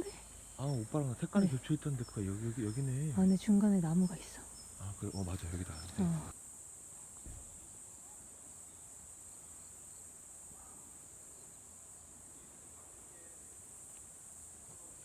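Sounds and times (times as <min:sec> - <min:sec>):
crickets chirring: 0:00.0 - 0:15.0.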